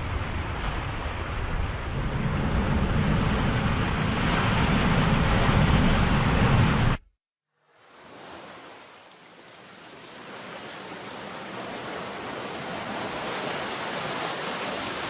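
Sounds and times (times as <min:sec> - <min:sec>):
waves washing in: 0:00.0 - 0:07.1, 0:07.7 - 0:15.0.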